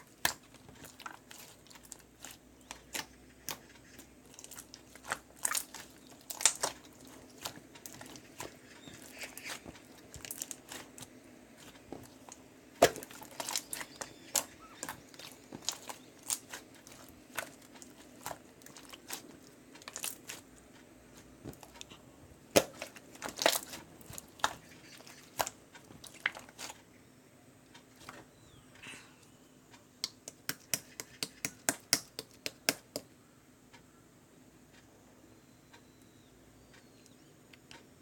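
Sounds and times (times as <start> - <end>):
slime crackling and popping: 0.0 - 20.5, 22.5 - 26.7.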